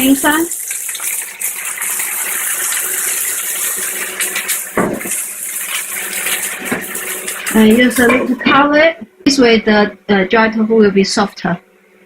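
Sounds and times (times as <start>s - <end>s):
water sizzling in hot pan: 0.0s - 8.4s
knock: 4.8s - 5.1s.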